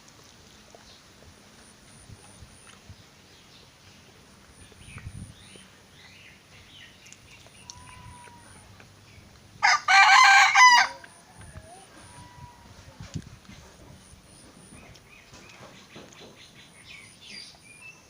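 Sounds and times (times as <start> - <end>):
small birds chirping: 0.0 - 9.5, 11.0 - 18.0
rooster crowing: 9.6 - 12.8.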